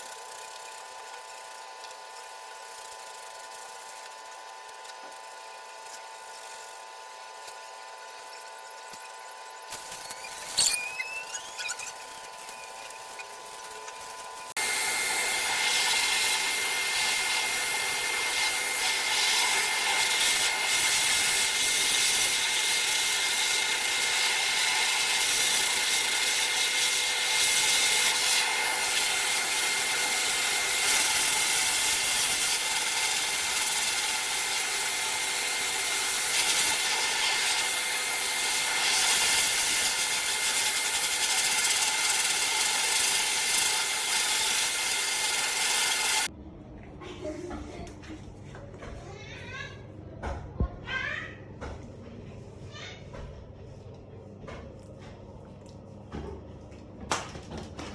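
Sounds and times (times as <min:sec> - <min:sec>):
pet dryer blowing air: 0:14.5 - 0:46.3.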